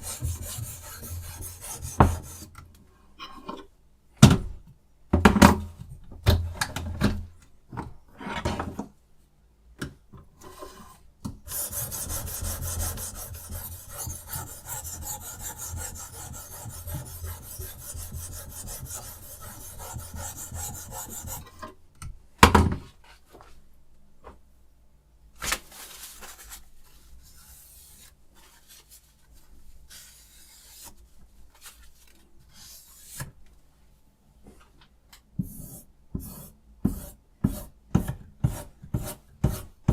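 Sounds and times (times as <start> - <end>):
sharpening stone rasping on blade: 11.5 - 21.4.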